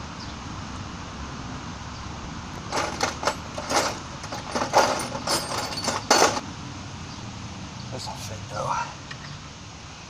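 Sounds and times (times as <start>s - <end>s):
metal tools clinking: 2.6s - 6.4s.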